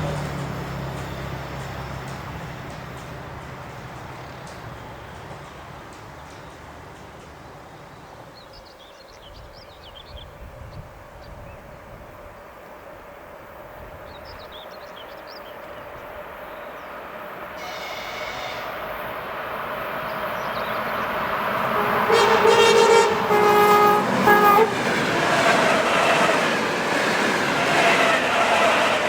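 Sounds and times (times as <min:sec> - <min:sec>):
electric train rumble: 0:00.0 - 0:29.0.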